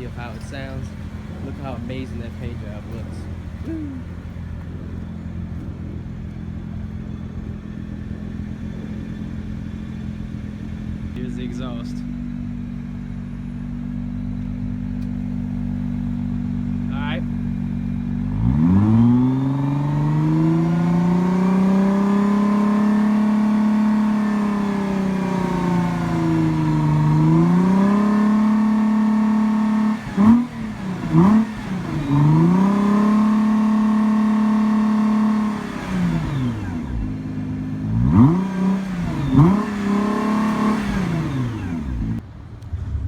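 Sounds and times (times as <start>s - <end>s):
car engine revving: 0.0s - 43.0s.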